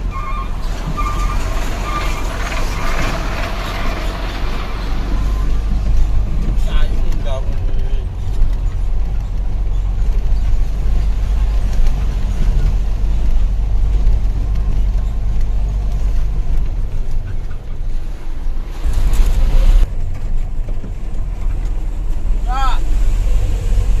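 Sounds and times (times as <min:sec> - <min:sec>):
diesel truck engine rumbling: 0:00.0 - 0:24.0
road noise: 0:00.0 - 0:24.0.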